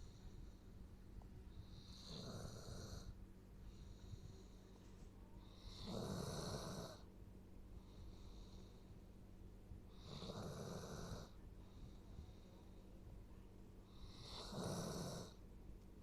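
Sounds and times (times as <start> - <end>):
dog snoring: 1.6 - 4.5, 5.4 - 7.1, 9.9 - 12.5, 13.9 - 15.4.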